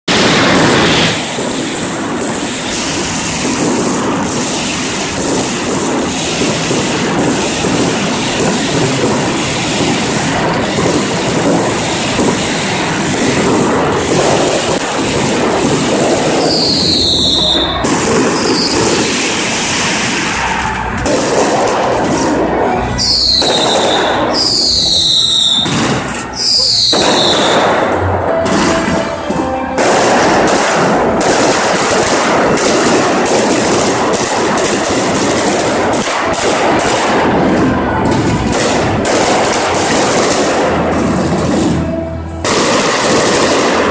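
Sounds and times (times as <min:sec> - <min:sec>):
fireworks crackling and popping: 0:00.0 - 0:43.9
fireworks whistles falling in pitch: 0:00.2 - 0:21.8, 0:22.9 - 0:34.0.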